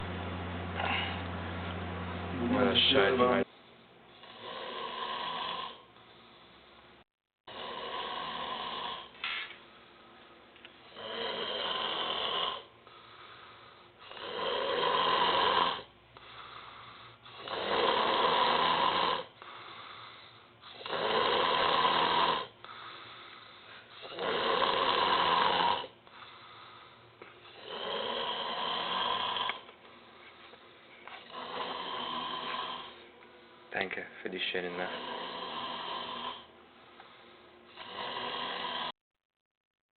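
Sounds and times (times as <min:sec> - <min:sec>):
person snoring loudly: 0:04.2 - 0:05.9, 0:07.5 - 0:09.1, 0:10.8 - 0:12.7, 0:14.0 - 0:23.4, 0:24.0 - 0:26.8, 0:27.5 - 0:29.6, 0:31.3 - 0:33.0, 0:34.8 - 0:36.5, 0:37.7 - 0:39.0
soft breathing: 0:12.8 - 0:14.1, 0:16.1 - 0:17.4, 0:19.4 - 0:20.8, 0:22.6 - 0:24.2, 0:26.0 - 0:27.6, 0:36.7 - 0:37.8.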